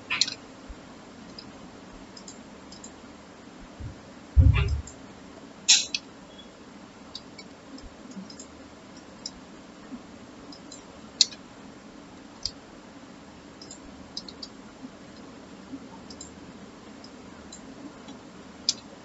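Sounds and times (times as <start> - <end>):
faint steady low hum: 0.0 - 19.0
mouse and keyboard clicks: 0.1 - 0.4, 13.6 - 14.5.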